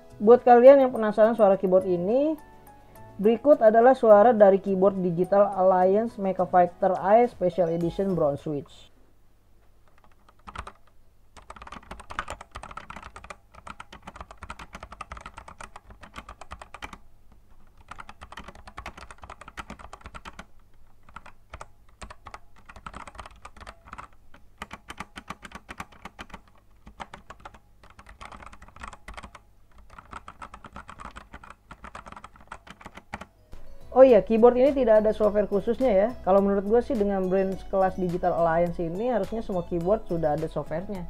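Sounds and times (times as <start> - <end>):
mechanical keyboard typing: 9.8 - 33.4.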